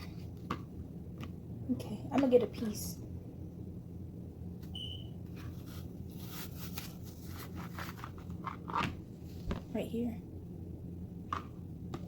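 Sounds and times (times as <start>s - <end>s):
steady low hum: 0.0s - 12.0s
high beep: 4.8s - 5.1s.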